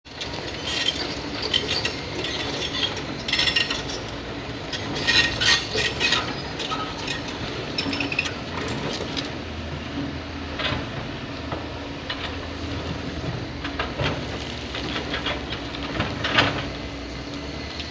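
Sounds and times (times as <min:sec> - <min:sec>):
excavator engine rumbling: 0:00.1 - 0:17.9
metallic clanks and scrapes: 0:00.3 - 0:09.2.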